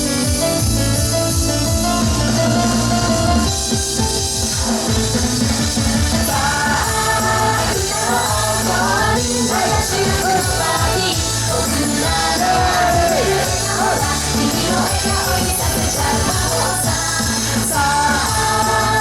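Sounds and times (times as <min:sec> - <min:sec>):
pop dance music with beat: 0:00.0 - 0:19.0
person singing: 0:06.3 - 0:19.0.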